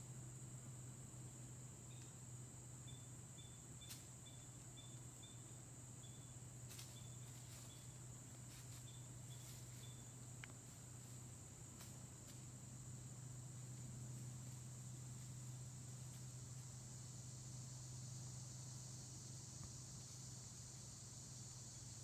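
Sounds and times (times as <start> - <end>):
insect drone: 0.0 - 22.0
short high insect chirps: 2.8 - 8.0, 8.6 - 10.2.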